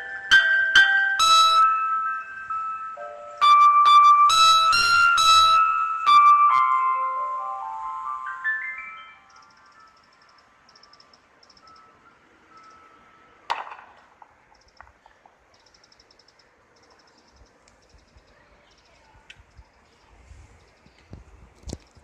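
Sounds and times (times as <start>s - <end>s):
high-pitched trilled chirps: 0.0s - 13.2s
sharp knock: 13.5s - 14.9s.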